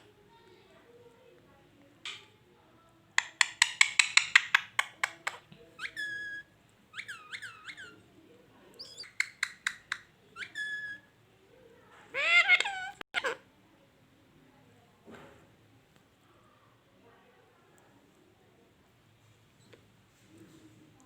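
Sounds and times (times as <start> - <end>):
parrot clicking: 3.2 - 6.2, 8.8 - 10.9
parrot whistled calls: 5.8 - 7.9, 10.4 - 11.0.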